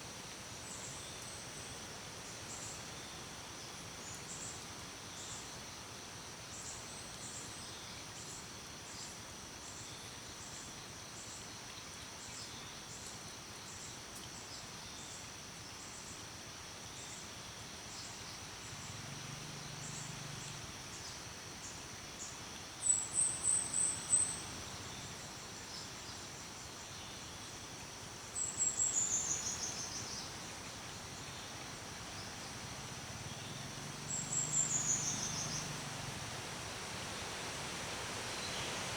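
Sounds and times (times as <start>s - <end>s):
high insect drone: 28.3s - 38.9s.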